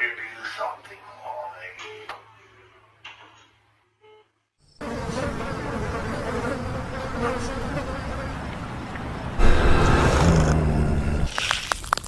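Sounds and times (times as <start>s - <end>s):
loud insect-like buzzing: 4.6s - 8.7s, 9.4s - 11.3s.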